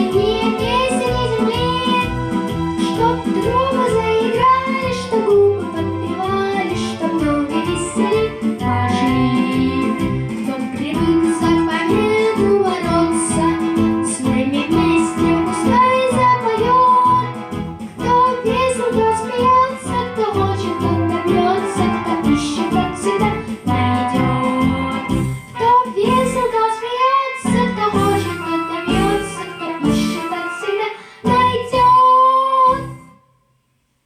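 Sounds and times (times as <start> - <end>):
child singing: 0.0 - 2.2, 2.8 - 17.4, 18.0 - 32.9
instrumental backing track: 0.0 - 32.0.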